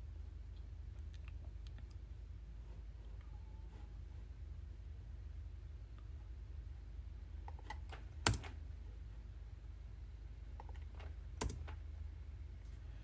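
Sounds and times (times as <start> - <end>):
steady low hum: 0.0 - 13.0
computer keyboard typing: 7.5 - 8.6, 10.6 - 11.8.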